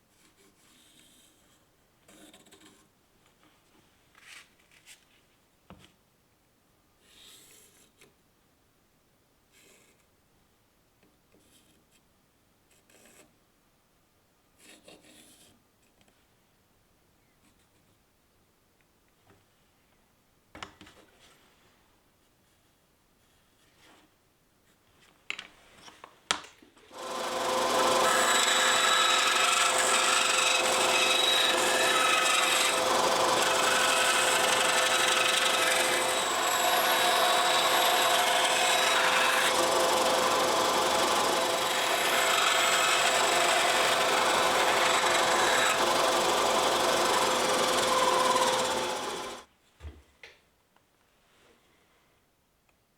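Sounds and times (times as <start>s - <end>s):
motor whining: 26.9s - 49.4s
tool rasping on knife: 27.0s - 49.4s.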